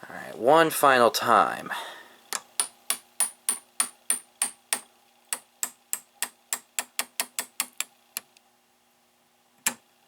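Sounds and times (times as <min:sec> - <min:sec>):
faint steady hum: 0:00.0 - 0:10.0
rotary switch clicking: 0:09.6 - 0:09.8.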